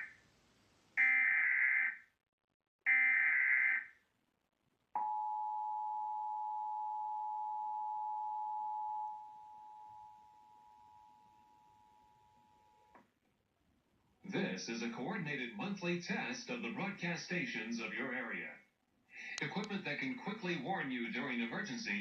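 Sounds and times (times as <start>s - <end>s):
two-tone alarm: 1.0s - 2.0s, 2.9s - 3.9s, 5.0s - 12.1s.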